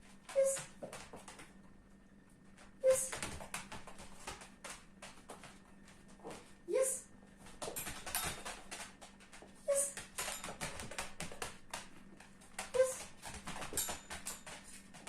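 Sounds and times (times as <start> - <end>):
dog yipping: 0.3 - 0.7, 12.7 - 13.1.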